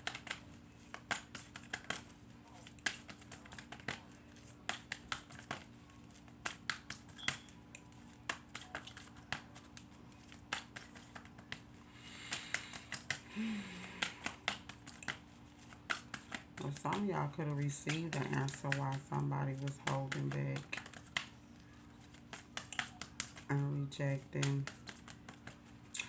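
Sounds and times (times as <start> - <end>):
cards being shuffled: 0.0 - 25.9
person murmuring: 13.3 - 14.2.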